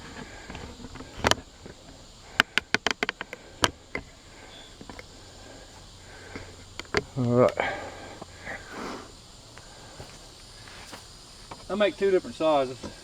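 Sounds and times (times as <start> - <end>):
sharp clicks and knocks: 0.0 - 5.2, 6.3 - 7.6
crickets chirping: 0.0 - 13.0.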